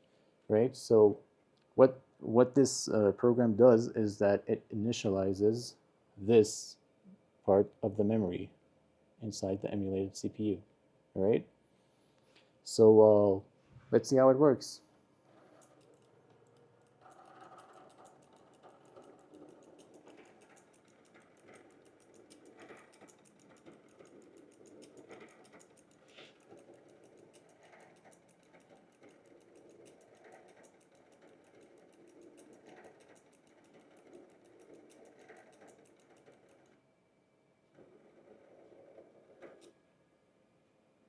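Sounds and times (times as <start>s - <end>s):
soft motor whirr: 15.2s - 36.9s, 37.7s - 39.8s.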